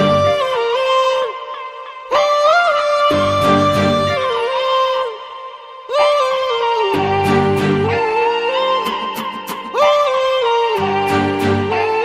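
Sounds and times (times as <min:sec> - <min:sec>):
bass line: 0:00.0 - 0:00.5, 0:03.1 - 0:04.3, 0:07.0 - 0:08.1.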